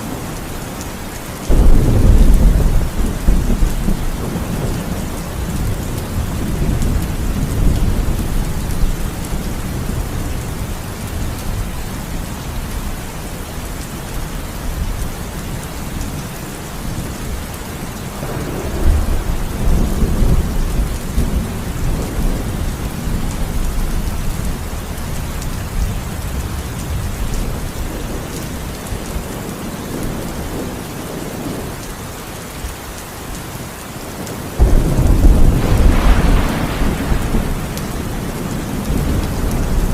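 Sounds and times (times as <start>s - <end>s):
heavy rain falling: 0.0s - 39.9s
rolling thunder: 1.5s - 11.6s, 18.1s - 24.6s, 34.2s - 39.9s.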